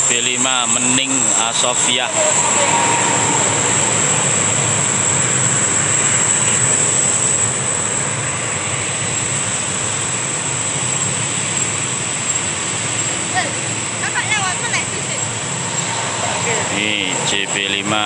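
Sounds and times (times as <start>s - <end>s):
bus diesel engine rumbling: 0.0s - 18.0s.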